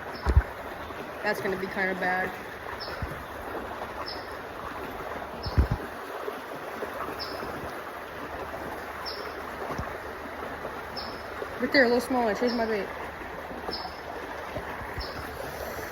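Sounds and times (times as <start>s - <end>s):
creek water running: 0.0s - 15.9s
dull low thump: 0.2s - 0.6s, 5.4s - 5.9s.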